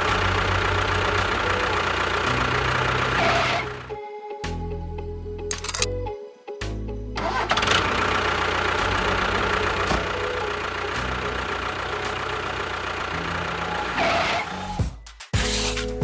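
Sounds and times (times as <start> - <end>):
engine starting and running: 0.0 - 4.0, 5.5 - 5.9, 7.2 - 14.8.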